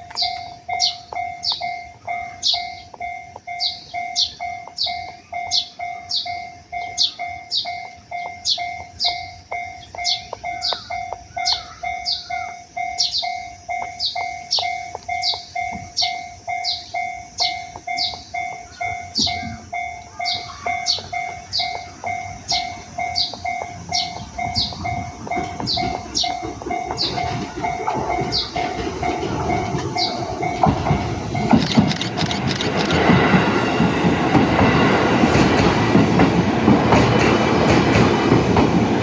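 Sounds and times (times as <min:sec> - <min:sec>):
approaching train rumble: 0:00.0 - 0:39.0.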